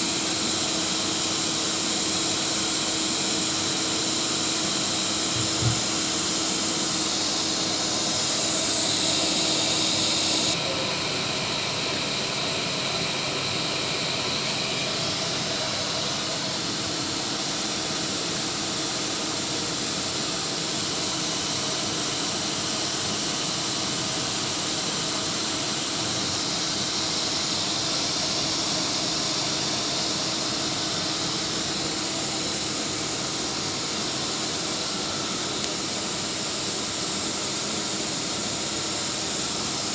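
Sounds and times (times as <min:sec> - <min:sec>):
router hissing: 0:04.4 - 0:17.0.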